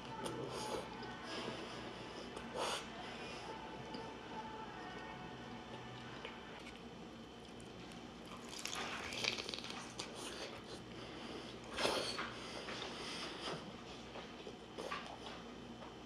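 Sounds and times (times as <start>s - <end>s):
biting and chewing food: 5.8s - 10.8s.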